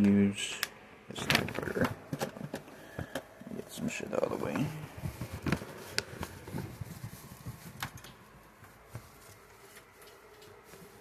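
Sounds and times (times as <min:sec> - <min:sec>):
low rustling: 0:03.5 - 0:11.0.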